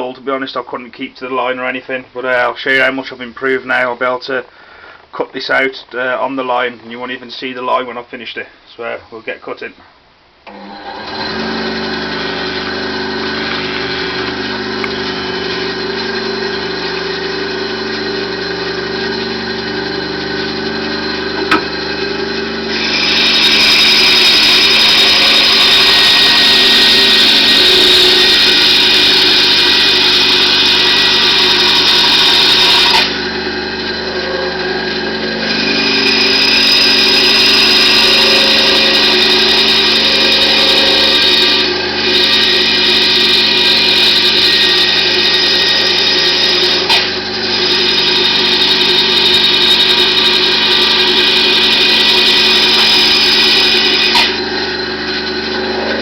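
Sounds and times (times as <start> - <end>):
bandsaw blade cutting plywood: 10.5 - 56.0
bandsaw humming: 10.5 - 56.0.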